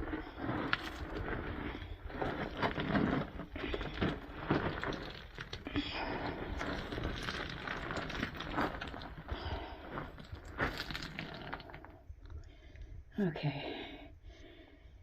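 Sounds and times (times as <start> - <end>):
scuffing and scraping on rocks: 0.0 - 11.9.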